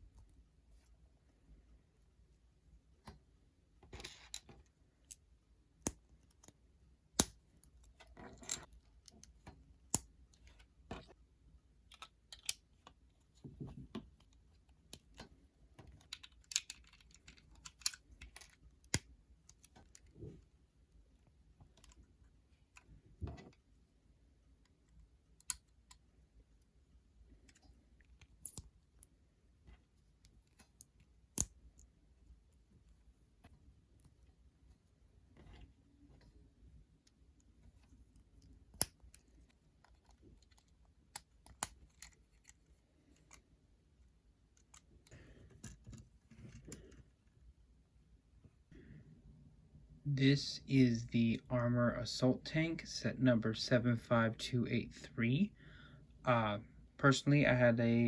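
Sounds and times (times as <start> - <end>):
plastic bricks clicking and snapping: 16.0 - 19.0.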